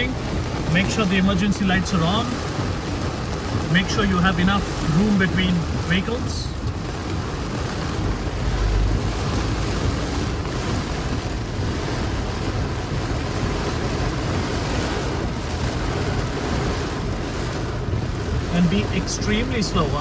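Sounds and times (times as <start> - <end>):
heavy rain on a car: 0.0 - 20.0
tyre and road noise: 0.0 - 20.0.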